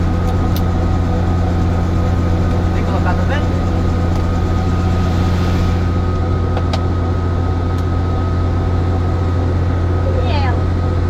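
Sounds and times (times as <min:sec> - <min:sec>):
helicopter drone: 0:00.0 - 0:11.0
high turbine whine: 0:00.0 - 0:11.0.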